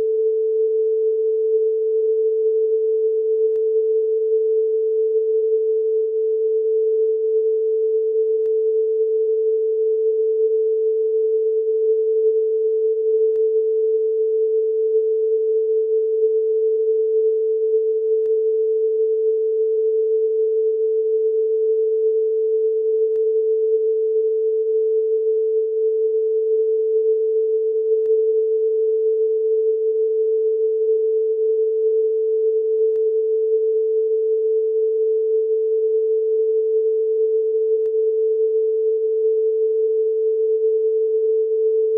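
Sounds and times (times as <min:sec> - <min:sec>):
electronic sine tone: 0:00.0 - 0:41.9
faint tick: 0:03.4 - 0:03.7, 0:08.3 - 0:08.6, 0:23.0 - 0:23.3, 0:32.8 - 0:33.1.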